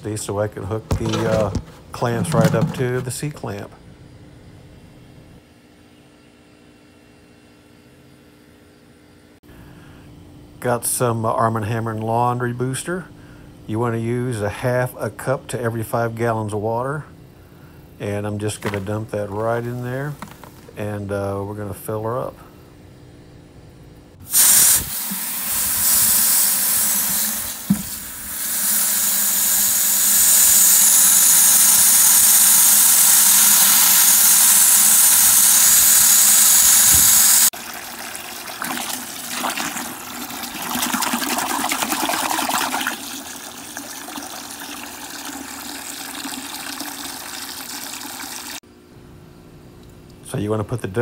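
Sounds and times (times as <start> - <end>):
water pouring into a bucket: 37.6 - 48.6.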